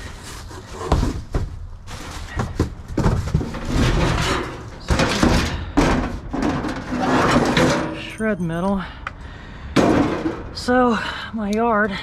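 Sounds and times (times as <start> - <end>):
scrap metal clunking and scraping: 0.0 - 8.4, 9.7 - 10.8
rattling clatter: 2.0 - 8.4.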